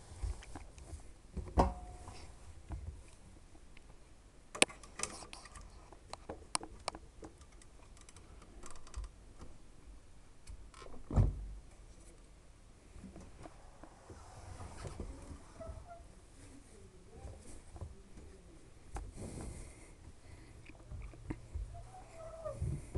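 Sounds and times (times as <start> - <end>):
low rumble: 12.9 - 16.4.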